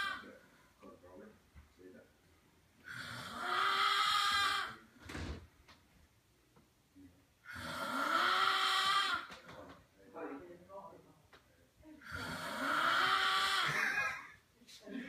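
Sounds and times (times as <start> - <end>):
man snoring: 2.9 - 4.9, 7.5 - 9.3, 12.1 - 14.1.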